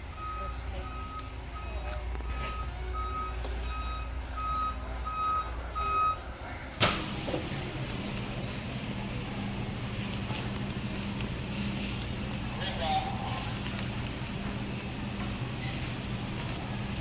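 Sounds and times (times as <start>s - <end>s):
reversing alarm beeping: 0.0s - 6.3s.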